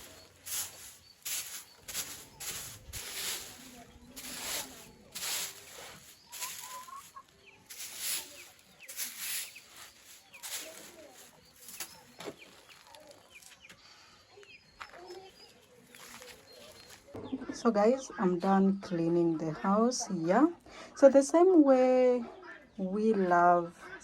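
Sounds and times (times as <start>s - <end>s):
broom sweeping strokes: 0.0s - 12.1s
chickens clucking: 0.0s - 18.6s.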